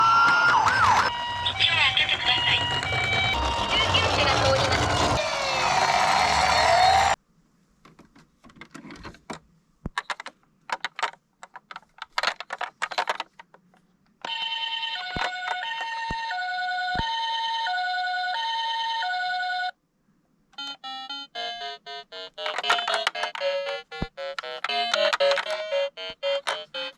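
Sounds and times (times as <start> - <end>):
toy hi-lo siren: 0.0 - 7.2.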